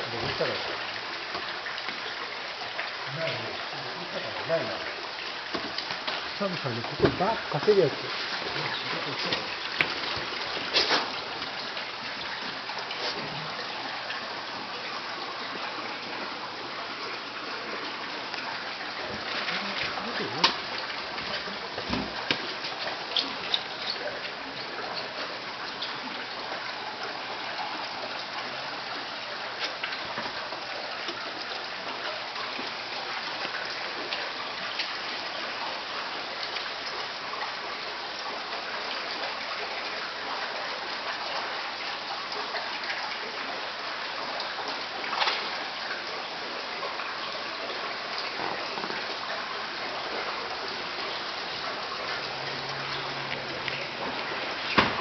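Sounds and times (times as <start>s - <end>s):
water rushing and splashing: 0.0s - 55.0s
small splashes: 3.0s - 14.8s.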